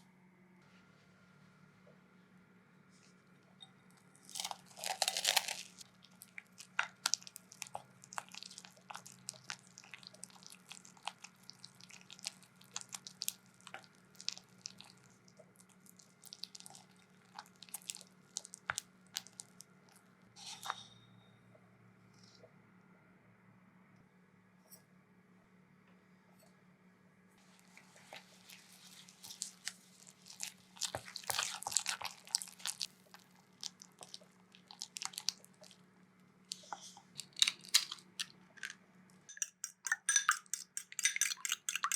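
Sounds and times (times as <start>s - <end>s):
kitchen utensils clicking and tapping: 39.3s - 41.9s.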